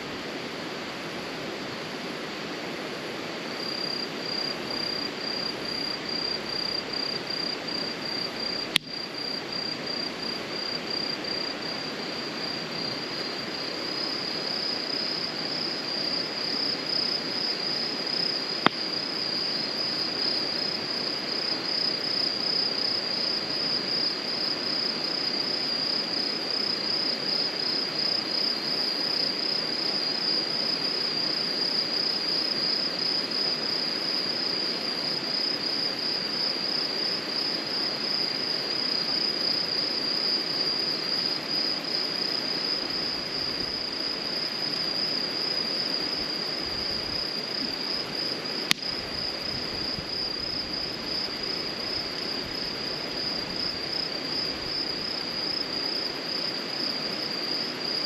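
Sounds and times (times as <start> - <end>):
crickets trilling: 0.0 - 58.0
sharp pop: 48.7 - 48.9.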